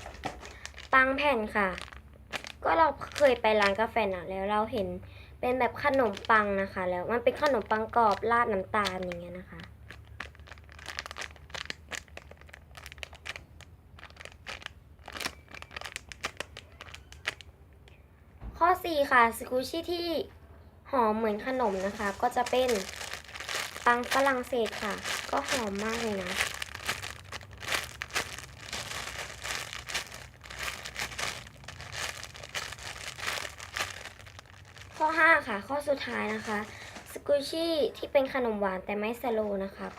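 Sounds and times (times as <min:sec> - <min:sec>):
wrapping crinkling: 0:00.0 - 0:04.1, 0:05.7 - 0:18.0, 0:21.4 - 0:37.2.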